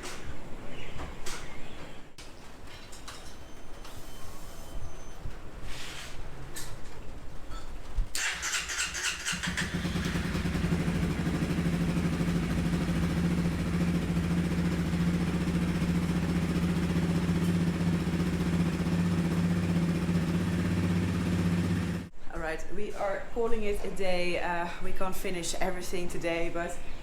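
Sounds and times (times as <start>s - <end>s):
motorcycle engine starting and idling: 8.1s - 22.1s.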